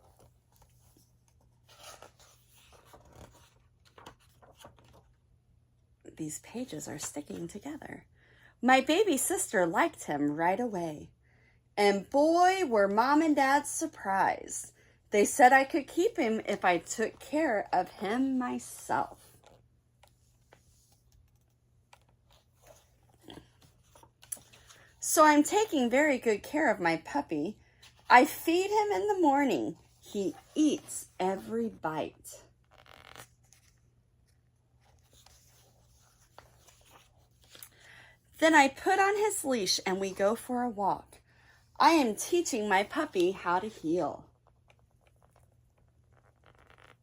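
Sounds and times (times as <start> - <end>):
paper pages rustling: 0.0 - 5.2, 16.4 - 25.0, 32.5 - 37.8, 42.8 - 47.0.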